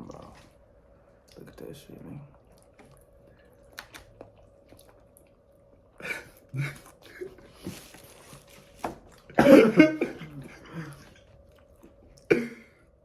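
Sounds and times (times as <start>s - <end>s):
loud cough: 9.3s - 11.0s, 12.3s - 12.7s.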